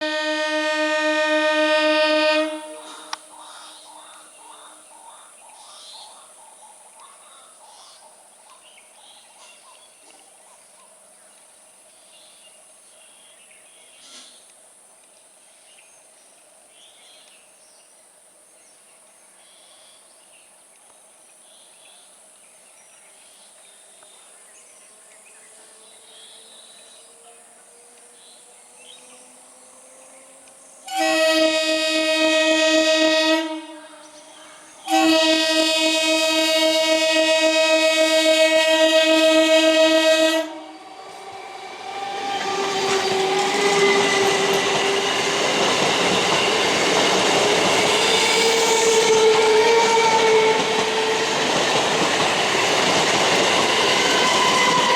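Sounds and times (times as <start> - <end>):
loud train horn: 0.0 - 3.2, 29.0 - 54.9.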